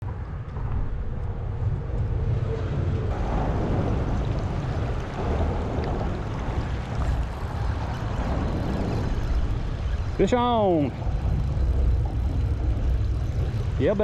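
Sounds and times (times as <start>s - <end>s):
wind buffeting microphone: 0.0s - 14.0s
creek water rushing: 3.1s - 14.0s.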